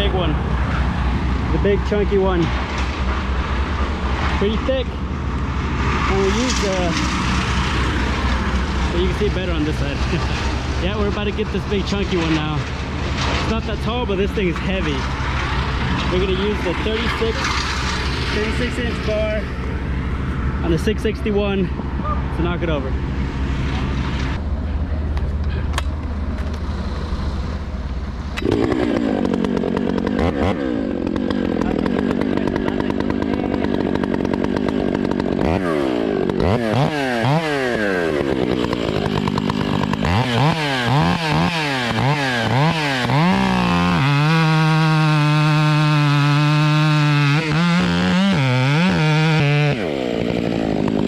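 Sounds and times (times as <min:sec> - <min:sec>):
chainsaw revving: 0:05.8 - 0:20.9, 0:28.3 - 0:51.0.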